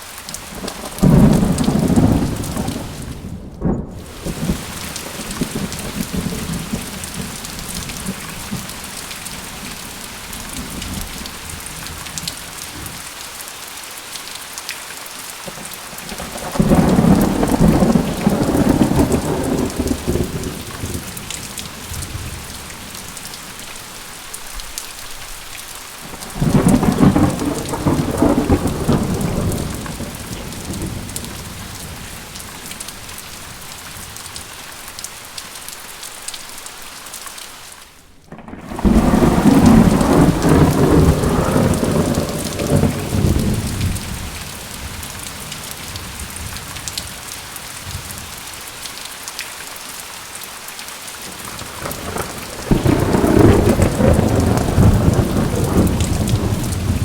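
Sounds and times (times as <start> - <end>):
steady rain: 0.0 - 57.0
thunder rumbling: 0.5 - 13.0, 15.5 - 23.8, 26.0 - 34.2, 38.2 - 47.2, 51.3 - 57.0.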